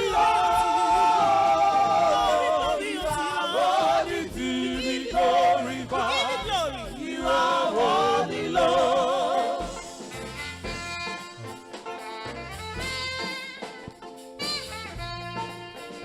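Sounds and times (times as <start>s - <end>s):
gospel singing with vibrato: 0.0s - 10.8s
bass line: 0.0s - 11.6s.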